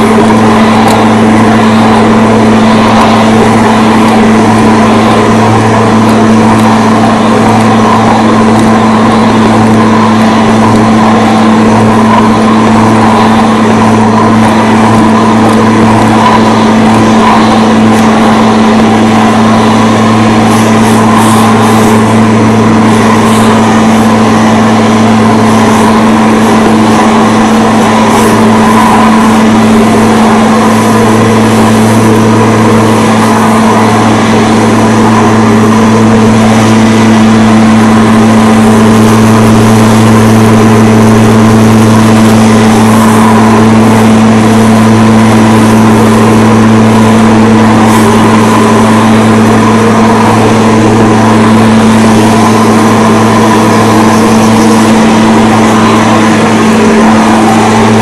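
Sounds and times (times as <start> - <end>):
lawn mower engine running: 0.0 - 58.0.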